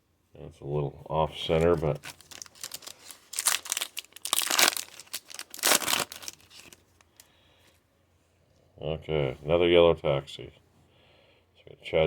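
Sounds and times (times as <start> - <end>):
wrapper tearing and crinkling: 1.5 - 6.8.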